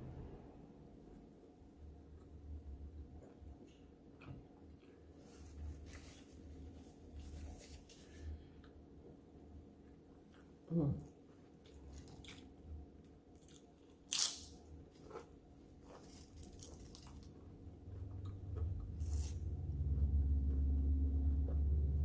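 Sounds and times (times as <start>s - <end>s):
low rumble: 0.0s - 3.2s, 17.6s - 22.0s
crunching and wet chewing: 11.6s - 20.1s.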